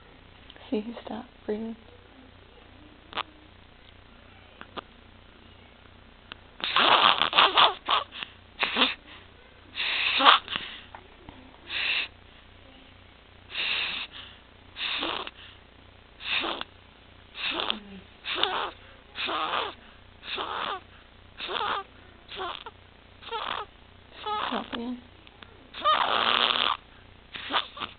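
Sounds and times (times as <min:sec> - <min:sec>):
infant gasping: 0:06.6 - 0:10.9, 0:11.7 - 0:12.1, 0:13.5 - 0:15.6, 0:17.4 - 0:24.7, 0:25.8 - 0:26.8, 0:27.4 - 0:27.9
high-pitched stridor breaths: 0:06.6 - 0:11.0, 0:11.7 - 0:12.5, 0:13.5 - 0:16.7, 0:17.3 - 0:24.7, 0:25.8 - 0:27.9.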